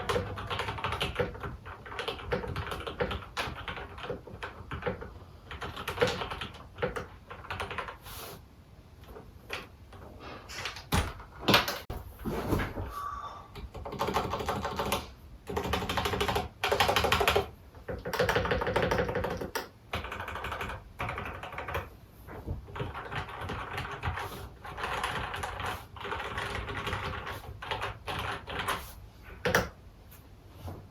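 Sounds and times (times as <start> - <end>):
mechanical keyboard typing: 0.0 - 8.0, 13.7 - 21.9, 22.7 - 28.8.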